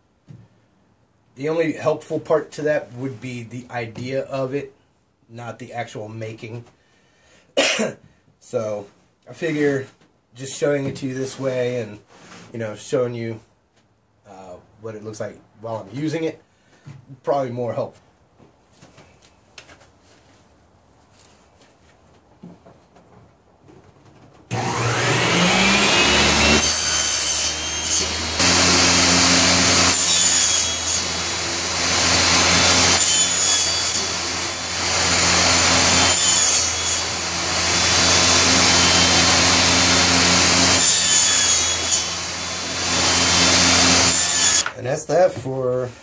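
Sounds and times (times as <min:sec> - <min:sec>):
table saw running: 0:24.5 - 0:44.7
saw blade cutting plywood: 0:24.5 - 0:44.8.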